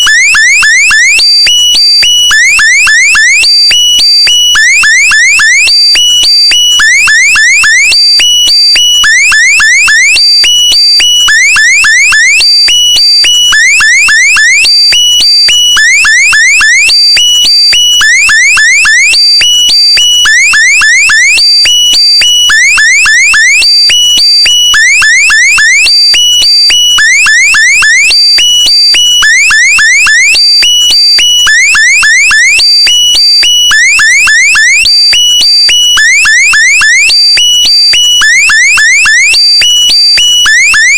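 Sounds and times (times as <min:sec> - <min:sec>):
electronic alarm chirps: 0:00.0 - 0:40.9.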